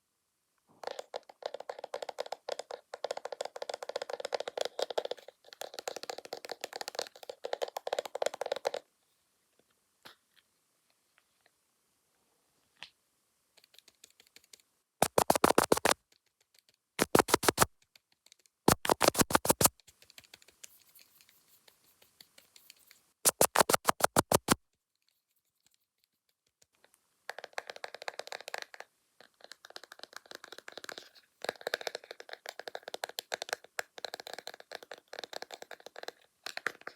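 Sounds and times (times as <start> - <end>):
rapid tapping: 15.0 - 16.0, 17.0 - 17.7, 18.7 - 19.7, 23.3 - 24.6.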